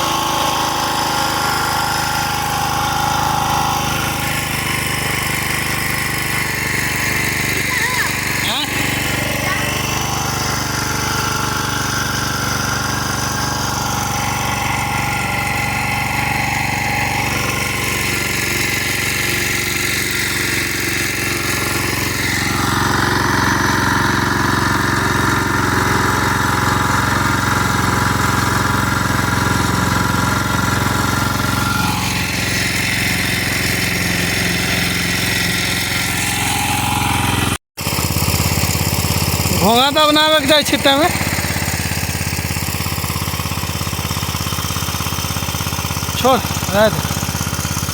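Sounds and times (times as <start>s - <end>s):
pump engine running: 0.0s - 47.9s.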